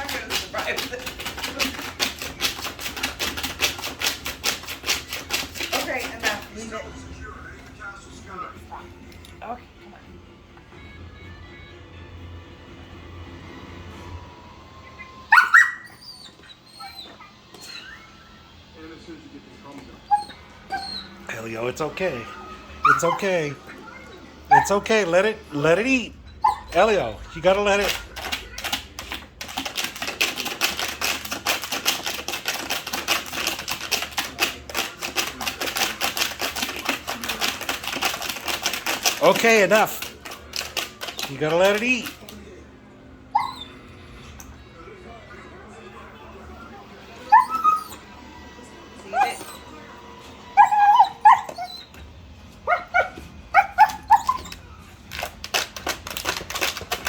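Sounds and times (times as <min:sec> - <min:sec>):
rapid irregular clicking: 0:00.0 - 0:06.5, 0:27.5 - 0:42.4, 0:53.8 - 0:57.0
puppy yipping and barking: 0:15.3 - 0:18.0, 0:26.4 - 0:26.8.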